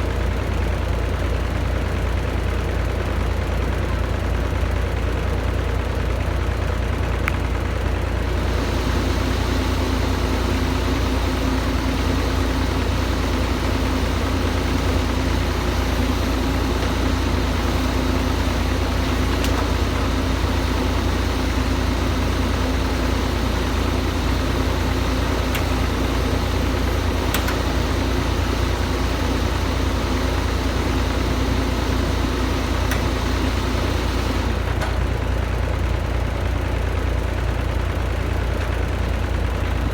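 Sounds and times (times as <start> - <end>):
excavator diesel engine running: 0.0 - 39.9
steady hum: 8.3 - 34.8.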